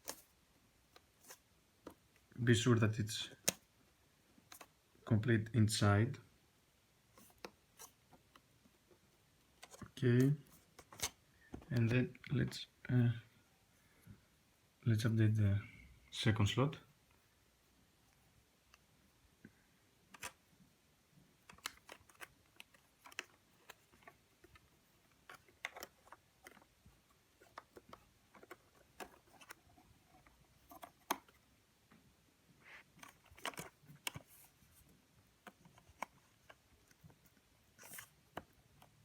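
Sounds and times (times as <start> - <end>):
faint clicks and scrapes: 0.0 - 2.0, 9.6 - 12.0, 20.1 - 20.4, 21.4 - 32.0, 32.6 - 39.0.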